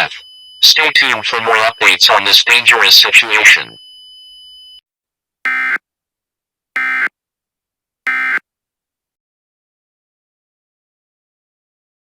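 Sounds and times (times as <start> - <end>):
digital data tone bursts: 0.0 - 3.8.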